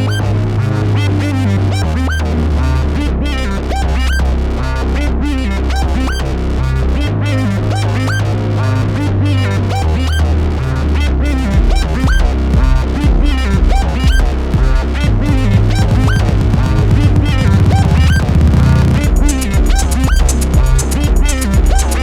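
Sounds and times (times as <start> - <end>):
synth bass line: 0.0 - 22.0
steady drum pattern: 11.6 - 22.0.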